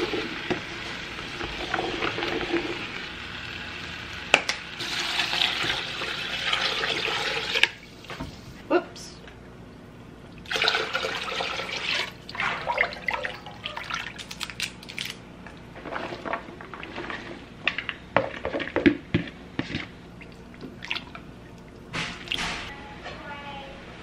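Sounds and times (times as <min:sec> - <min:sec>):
water running in a sink: 0:00.0 - 0:08.3, 0:10.4 - 0:14.2.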